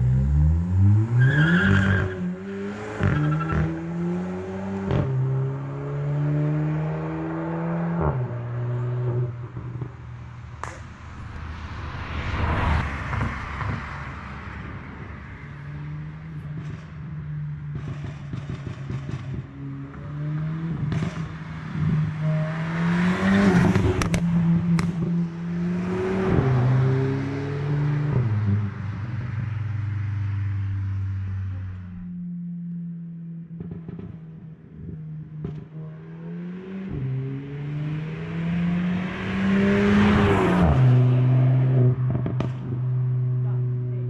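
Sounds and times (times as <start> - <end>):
car engine revving: 0.0 - 44.0
exhaust popping and crackling: 16.4 - 19.5, 42.0 - 43.2.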